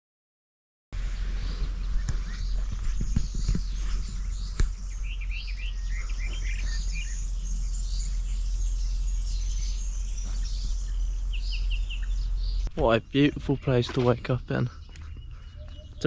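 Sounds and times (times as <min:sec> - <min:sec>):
songbirds chirping and singing: 0:01.0 - 0:16.0
steady low rumble: 0:01.0 - 0:16.0.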